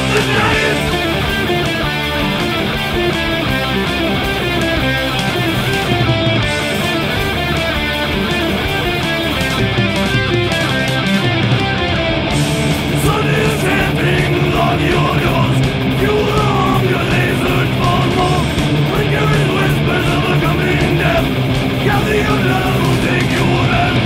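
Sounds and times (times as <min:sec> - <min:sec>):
lead vocal singing: 0:00.0 - 0:01.6, 0:12.9 - 0:24.0
heavy metal band playing: 0:00.0 - 0:24.0.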